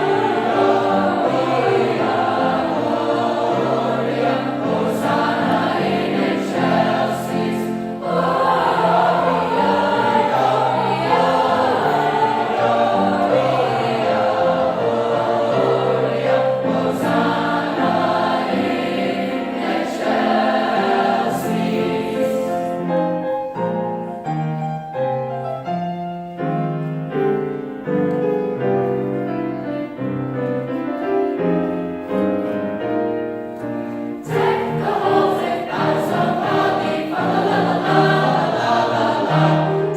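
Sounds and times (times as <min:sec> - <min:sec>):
choir singing: 0:00.0 - 0:23.3, 0:34.0 - 0:39.9.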